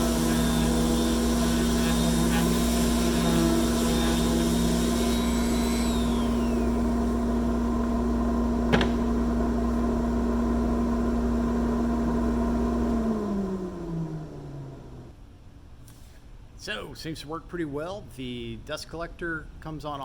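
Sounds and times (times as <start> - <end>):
dust collector humming: 0.0 - 15.0
electric sander whine: 0.0 - 15.1.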